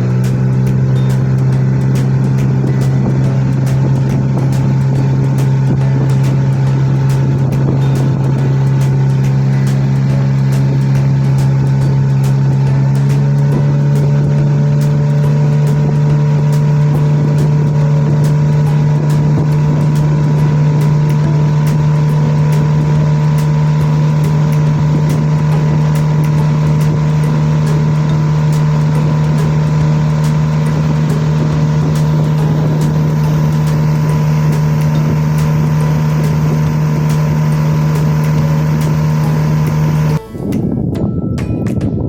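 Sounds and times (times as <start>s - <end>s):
motorboat engine humming: 0.0s - 42.0s.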